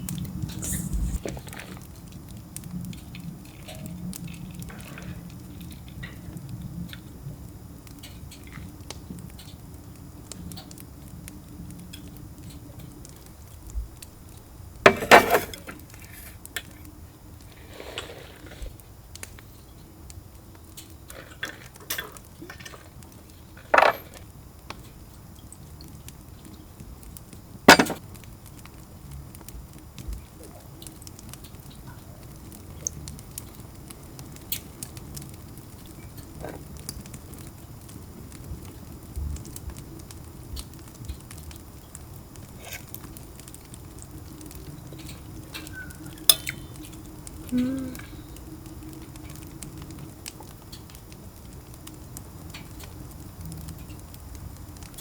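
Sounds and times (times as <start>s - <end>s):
dishes and glassware clinking: 14.9s - 15.7s, 23.7s - 24.2s, 27.7s - 28.0s.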